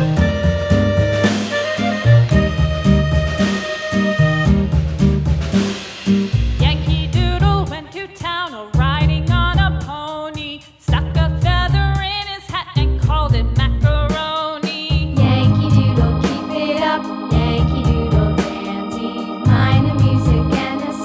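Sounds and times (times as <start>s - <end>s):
song with vocals beat and bass: 12.2s - 21.0s.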